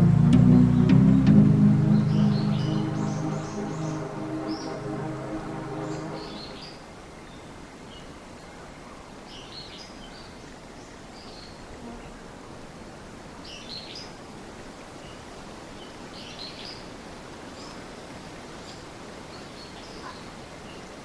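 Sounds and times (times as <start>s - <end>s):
songbird chirping: 0.0s - 6.8s.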